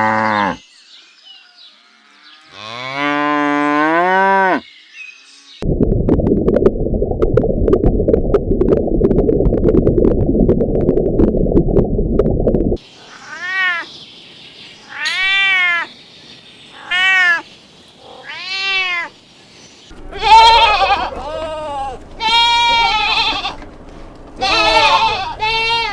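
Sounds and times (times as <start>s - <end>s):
dense low rumble: 5.6s - 12.8s, 19.9s - 25.9s
cat meowing: 14.9s - 15.9s, 18.1s - 19.1s, 20.1s - 23.6s, 24.4s - 25.9s
loud animal call: 20.0s - 23.6s, 24.4s - 25.9s.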